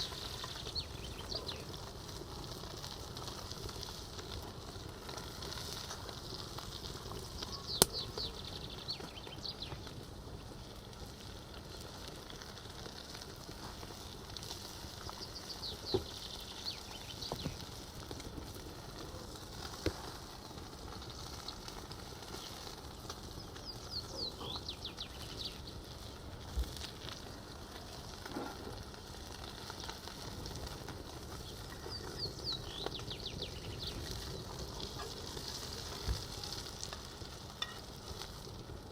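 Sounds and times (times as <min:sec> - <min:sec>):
songbird singing: 0:00.0 - 0:01.9, 0:07.0 - 0:09.9, 0:15.0 - 0:17.8, 0:22.3 - 0:25.8, 0:31.2 - 0:35.4
frying pan sizzling: 0:00.0 - 0:38.9.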